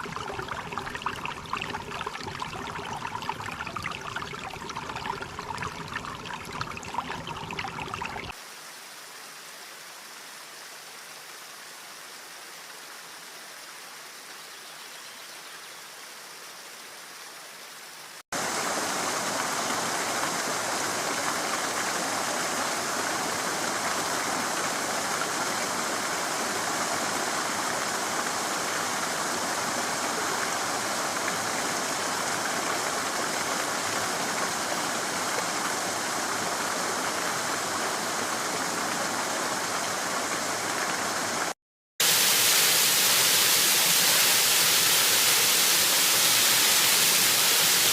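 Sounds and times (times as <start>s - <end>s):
stream water running: 0.0s - 8.4s, 16.9s - 47.9s.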